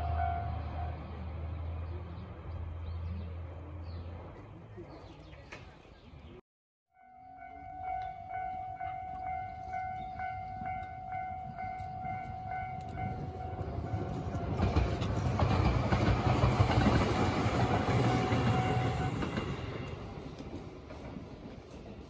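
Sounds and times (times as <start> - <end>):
diesel railcar engine rumble: 0.0 - 5.9, 7.2 - 22.0
level crossing warning bell: 7.0 - 14.8
train wheel clatter: 8.0 - 22.0.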